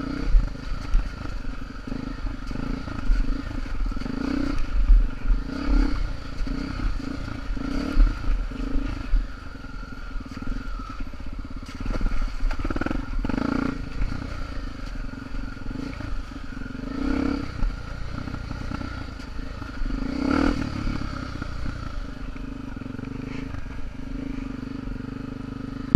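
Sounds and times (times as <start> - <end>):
motorcycle engines revving: 0.0 - 25.9.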